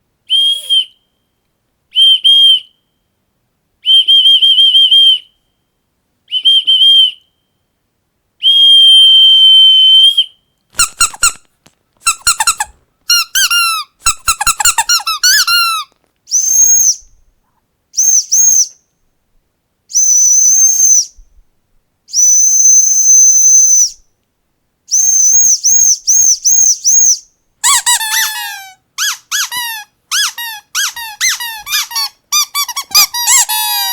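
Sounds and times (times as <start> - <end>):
high-pitched whistle blasts: 0.3 - 1.2, 8.4 - 11.4, 22.1 - 24.0
low whistle blasts: 0.3 - 1.2
squeaky toy squeaks: 10.8 - 15.9, 27.6 - 33.9.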